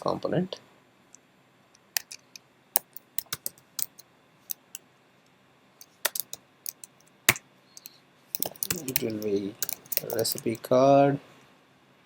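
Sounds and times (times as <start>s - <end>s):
typing on keyboard: 2.8s - 4.8s, 5.8s - 6.9s, 8.4s - 10.5s.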